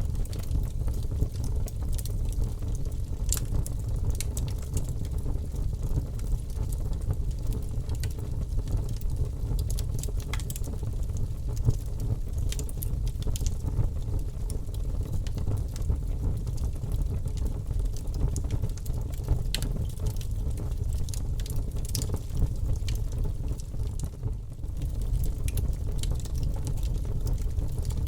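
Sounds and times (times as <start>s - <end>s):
fire crackles and pops: 0.0s - 28.0s.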